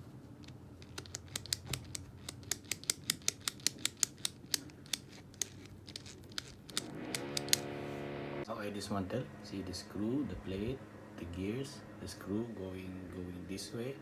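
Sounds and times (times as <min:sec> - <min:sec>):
small hard parts clicking: 0:00.4 - 0:07.7
faint low hum: 0:04.2 - 0:14.0.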